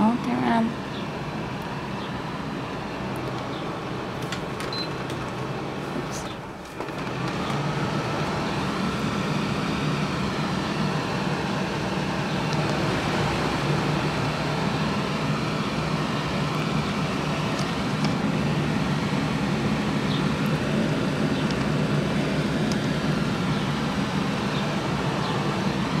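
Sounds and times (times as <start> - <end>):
air conditioning fan running: 0.0 - 26.0.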